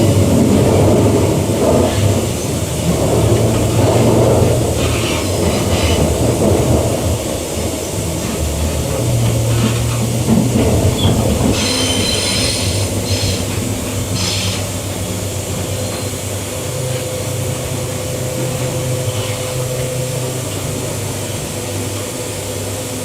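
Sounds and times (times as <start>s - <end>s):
electric train rumble and hum: 0.0s - 23.0s
train wheels squealing: 10.9s - 17.2s, 17.8s - 21.8s.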